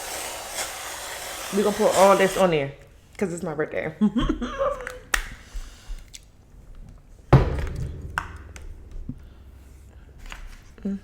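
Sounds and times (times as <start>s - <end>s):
heavy thump on table: 7.3s - 9.3s.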